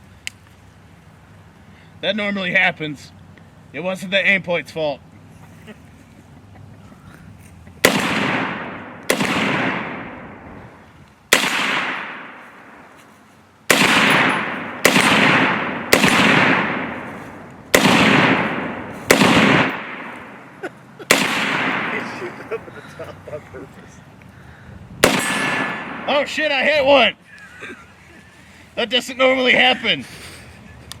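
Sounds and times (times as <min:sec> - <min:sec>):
rifle shots echoing: 0:07.8 - 0:12.9, 0:13.7 - 0:22.7, 0:25.0 - 0:26.7.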